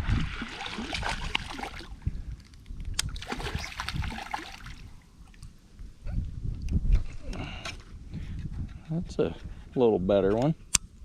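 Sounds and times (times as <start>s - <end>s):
creek water splashing: 0.0s - 2.0s, 3.2s - 5.5s.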